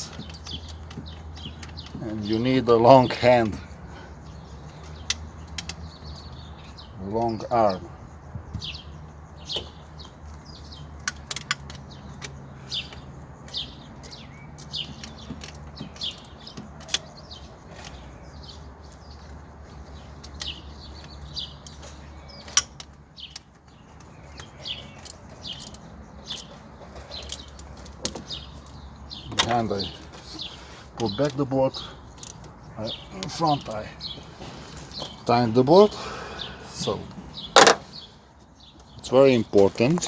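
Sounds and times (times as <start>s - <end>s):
sharp clicks and knocks: 0.0s - 2.1s, 4.6s - 6.5s, 9.5s - 17.1s, 20.1s - 30.2s, 37.5s - 37.9s
small bird chirping: 0.0s - 3.1s, 3.7s - 40.0s.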